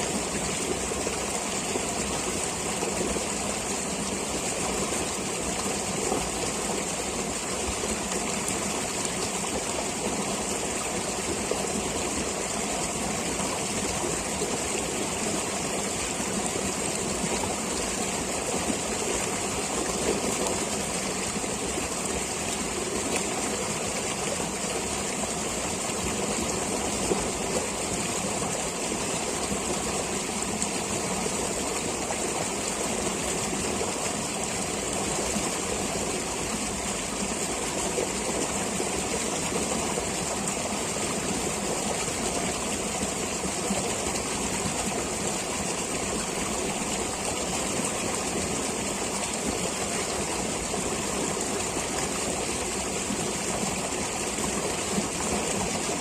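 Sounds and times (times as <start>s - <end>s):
stream water rushing: 0.0s - 56.0s.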